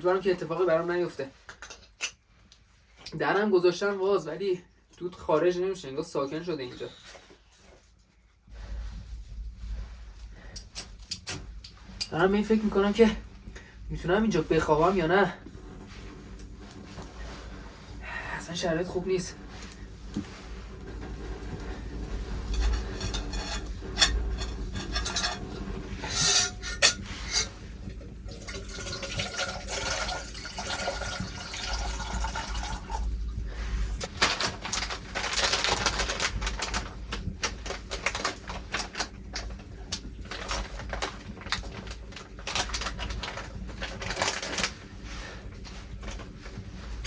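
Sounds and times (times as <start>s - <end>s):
liquid being handled: 19.5s - 44.9s
pots and utensils clinking: 22.4s - 27.6s.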